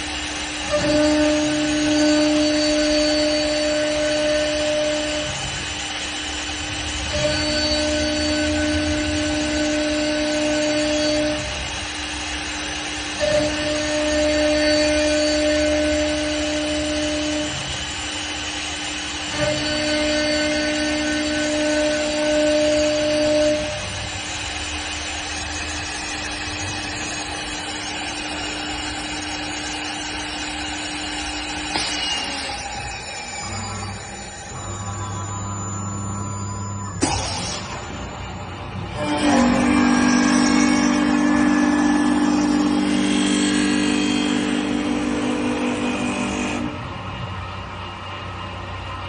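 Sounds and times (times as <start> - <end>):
spindle motor whine: 0.0 - 49.0
wood-turning lathe running: 38.8 - 46.7.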